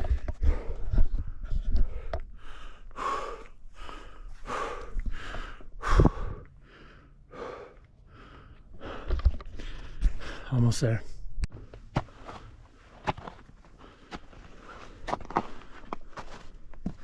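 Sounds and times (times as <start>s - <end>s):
person panting heavily: 0.0s - 10.5s, 13.6s - 16.4s.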